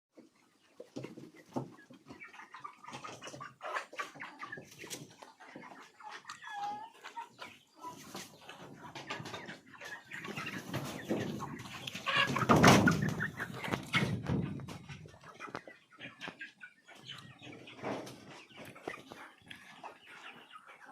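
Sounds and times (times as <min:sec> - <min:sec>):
chickens clucking: 0:00.1 - 0:20.9.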